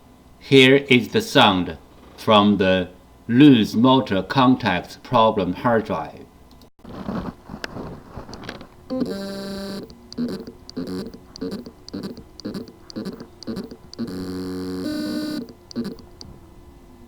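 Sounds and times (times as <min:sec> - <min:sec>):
faint hum: 0:07.5 - 0:17.0
hard drive rhythmic stutter: 0:08.9 - 0:16.2
hard drive motor whirring: 0:08.9 - 0:16.4.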